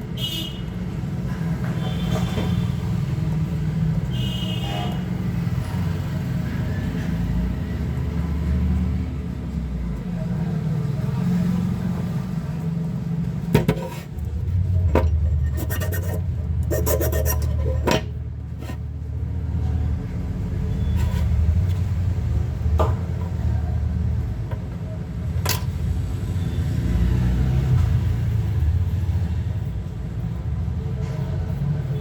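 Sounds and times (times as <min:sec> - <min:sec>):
small parts clicking and scraping: 0:13.5 - 0:18.8.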